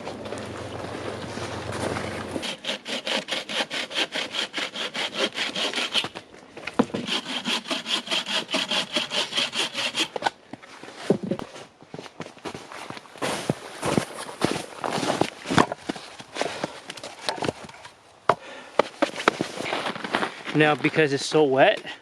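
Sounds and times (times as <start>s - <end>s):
hand saw cutting wood: 1.7s - 6.2s, 6.8s - 10.3s.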